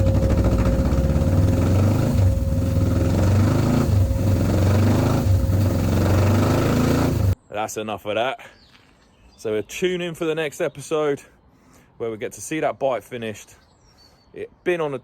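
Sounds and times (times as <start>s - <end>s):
motorcycle engine running: 0.0s - 7.4s.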